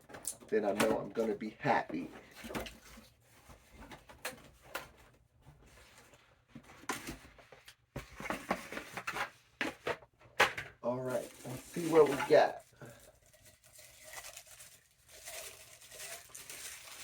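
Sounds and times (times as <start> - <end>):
packaging clicks and rustles: 11.1 - 17.0.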